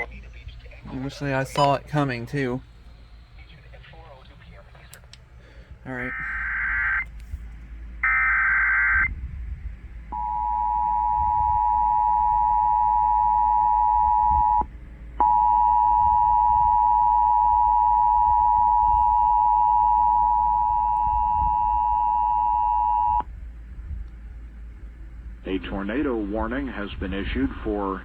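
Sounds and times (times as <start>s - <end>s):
two-tone attention signal: 10.2s - 23.2s.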